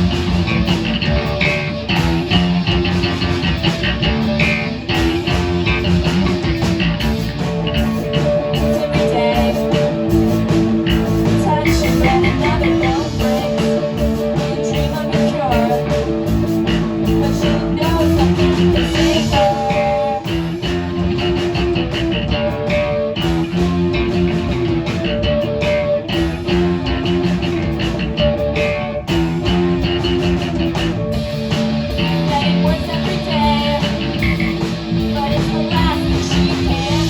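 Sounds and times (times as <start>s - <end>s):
bending electric guitar notes: 0.0s - 37.0s
live rock band playing: 0.0s - 37.0s.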